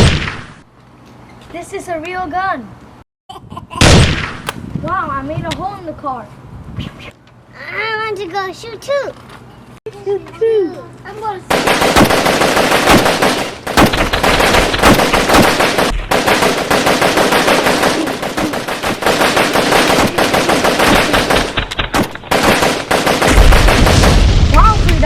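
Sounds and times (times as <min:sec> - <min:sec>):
automatic gunfire: 0:11.5 - 0:24.2
deep rumble: 0:23.3 - 0:25.0.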